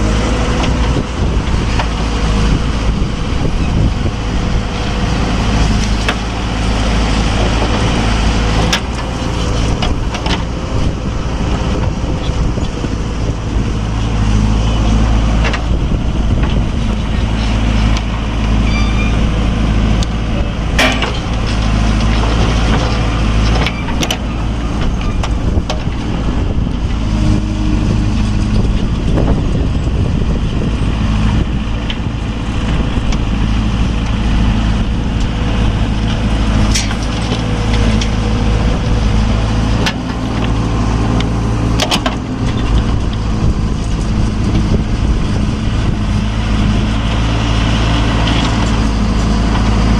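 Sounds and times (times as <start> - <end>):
heavy diesel engine under load: 0.0 - 49.9
sharp metallic knocks: 20.8 - 21.5.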